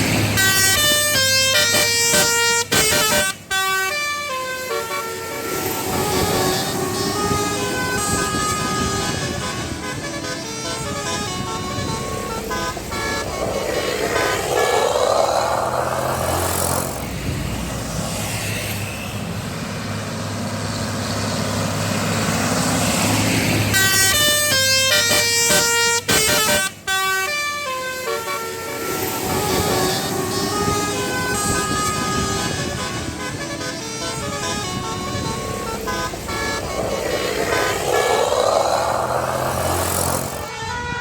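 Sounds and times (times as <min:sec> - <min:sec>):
bus engine running: 0:00.0 - 0:26.0, 0:28.2 - 0:40.6
vehicle rush: 0:00.0 - 0:26.9, 0:27.5 - 0:41.0
multi-tone musical air horn: 0:00.4 - 0:15.1, 0:23.7 - 0:41.0.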